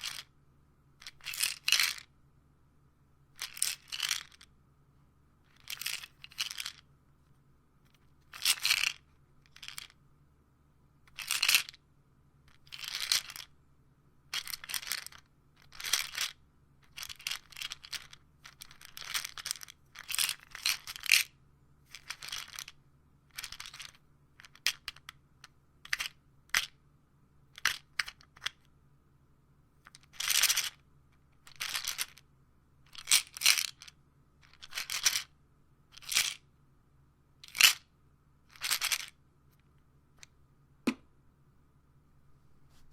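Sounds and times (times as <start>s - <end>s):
pills rattling in a bottle: 0.0s - 0.3s, 1.0s - 2.1s, 3.4s - 4.5s, 5.5s - 6.8s, 8.3s - 10.0s, 11.1s - 11.8s, 12.5s - 13.5s, 14.3s - 21.3s, 21.9s - 25.2s, 25.8s - 26.8s, 27.6s - 28.7s, 29.8s - 30.8s, 31.4s - 32.2s, 32.9s - 35.3s, 35.9s - 36.4s, 37.4s - 37.8s, 38.5s - 39.2s.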